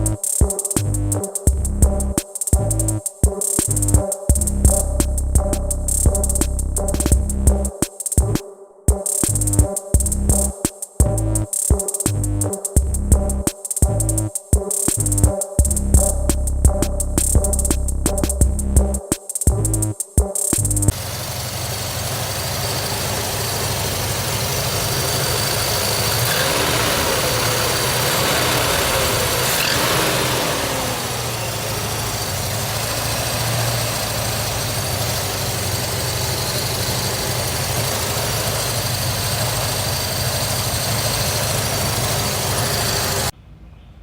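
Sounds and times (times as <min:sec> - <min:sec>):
car engine idling: 0:20.9 - 0:43.3.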